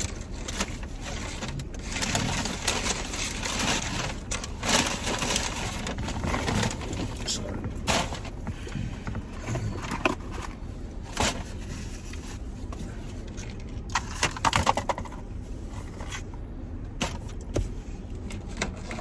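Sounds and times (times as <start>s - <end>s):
food wrappers crinkling: 0.0s - 7.3s
car rumble: 0.0s - 19.0s.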